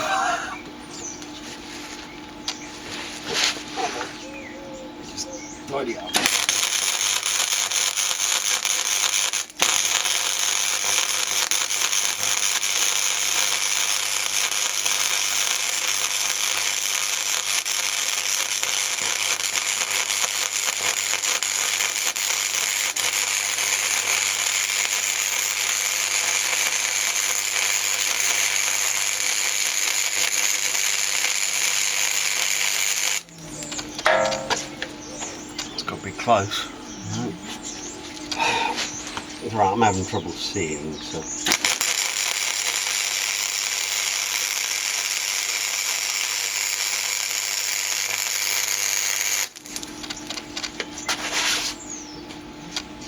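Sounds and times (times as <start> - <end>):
welding arc crackling and sizzling: 5.7 - 35.0, 38.1 - 52.0
low hum: 33.3 - 35.8.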